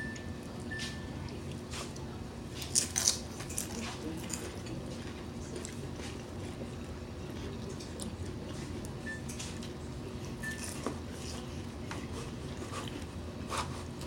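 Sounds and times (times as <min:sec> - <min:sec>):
steady low hum: 0:00.0 - 0:14.0
tortilla chips crunching: 0:02.6 - 0:06.2.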